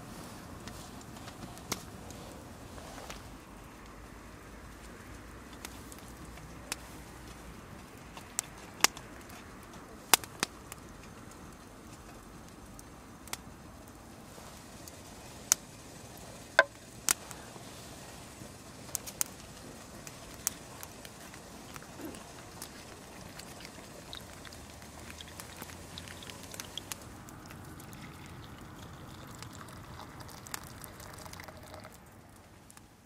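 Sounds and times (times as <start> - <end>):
wood fire crackling: 0.0 - 33.0.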